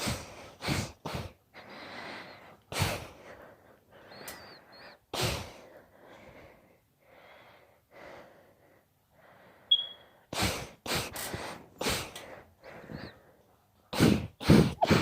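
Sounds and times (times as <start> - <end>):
girl breathing hard: 0.0 - 13.4
gasping sniffing breaths: 0.0 - 15.0.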